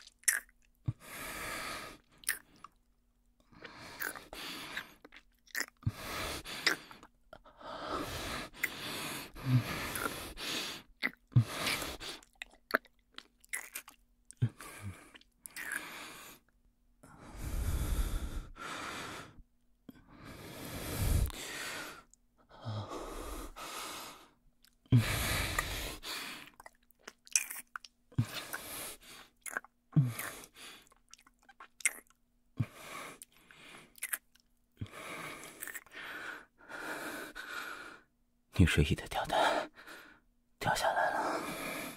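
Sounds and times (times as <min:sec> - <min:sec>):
man breathing heavily: 0:05.8 - 0:12.3, 0:15.8 - 0:19.4, 0:20.0 - 0:26.6, 0:34.8 - 0:38.1, 0:39.2 - 0:41.9.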